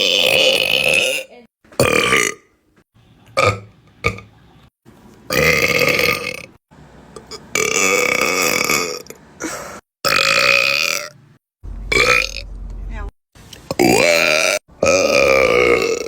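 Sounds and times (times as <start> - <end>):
women belching: 13.8 - 16.0.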